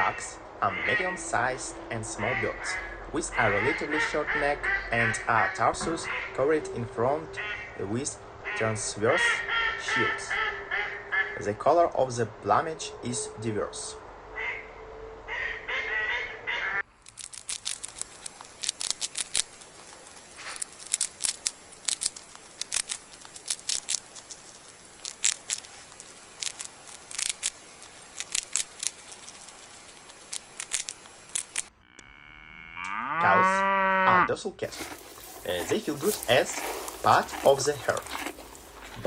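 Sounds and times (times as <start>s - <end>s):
ducks quacking: 0.0s - 11.6s, 14.4s - 16.8s, 32.9s - 39.0s.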